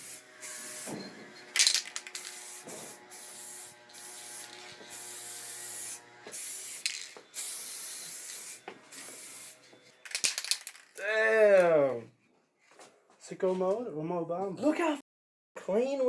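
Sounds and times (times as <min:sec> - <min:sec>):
spray paint can hissing: 0:00.0 - 0:10.8.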